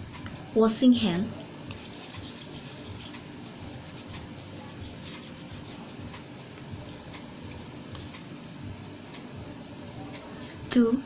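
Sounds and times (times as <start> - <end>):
hands rubbing together: 1.7 - 10.0.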